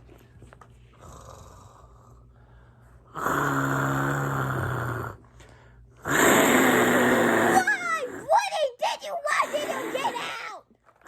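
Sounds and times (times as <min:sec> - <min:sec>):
person pretend snoring: 0:01.0 - 0:02.2, 0:03.1 - 0:05.2, 0:06.0 - 0:08.3
faint breath: 0:01.0 - 0:03.1.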